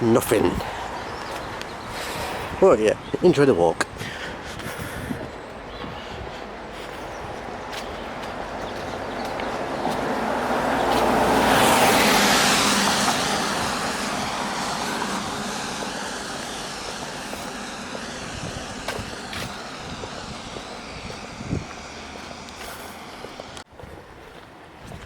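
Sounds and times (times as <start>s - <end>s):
road vehicle passing by: 0.0s - 3.1s, 3.8s - 25.0s.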